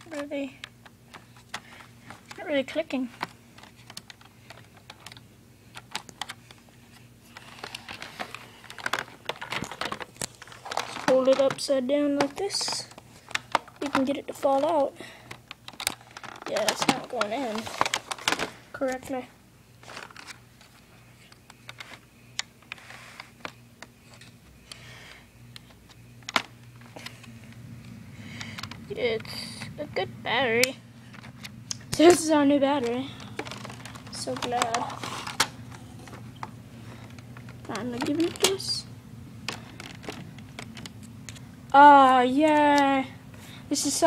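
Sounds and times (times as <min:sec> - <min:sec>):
faint steady hum: 0:00.0 - 0:44.0
small plastic clicks and knocks: 0:03.2 - 0:06.6.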